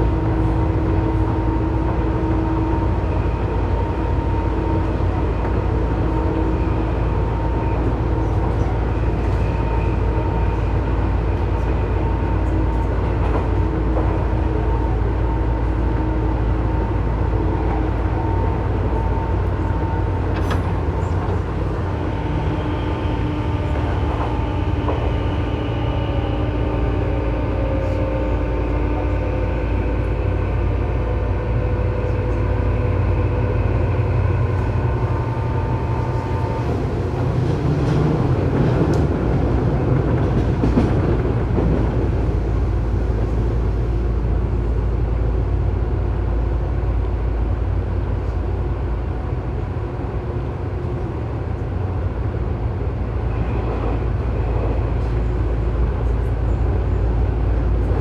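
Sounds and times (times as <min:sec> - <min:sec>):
wheel and rail rumble: 0:00.0 - 0:58.0
whining chopper tones: 0:20.3 - 0:40.1.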